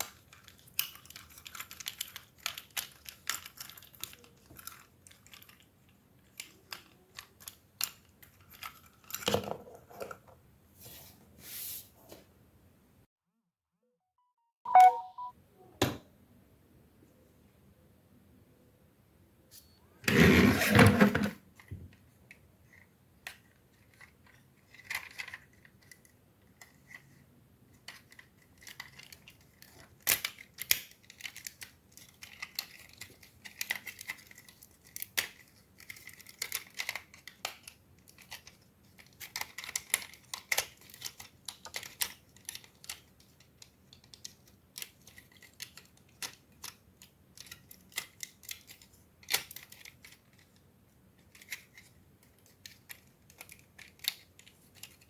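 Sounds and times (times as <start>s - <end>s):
plastic toy parts clicking: 0.0s - 9.5s, 21.5s - 50.6s, 51.2s - 55.0s.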